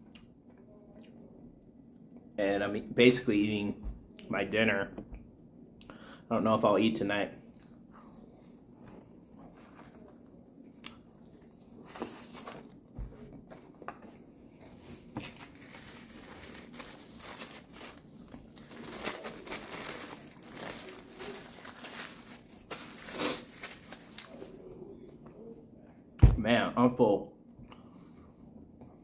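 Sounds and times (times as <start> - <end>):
food packaging crinkling: 14.6 - 24.6.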